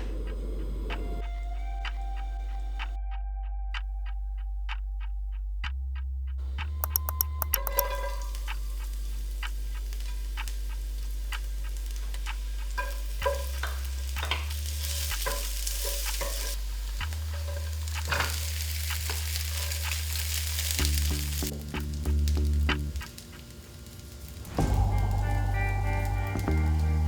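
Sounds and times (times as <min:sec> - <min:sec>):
utensil stirring and tapping pan: 0:06.8 - 0:21.9
food sizzling in a hot pan: 0:11.8 - 0:21.6.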